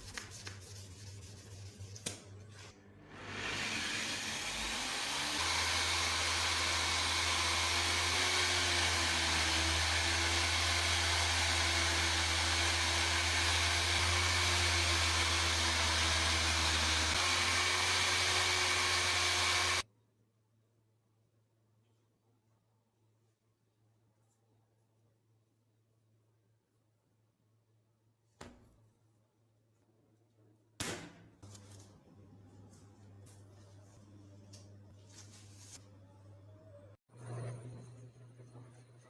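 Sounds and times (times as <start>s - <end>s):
small electric tool running: 3.3s - 19.8s.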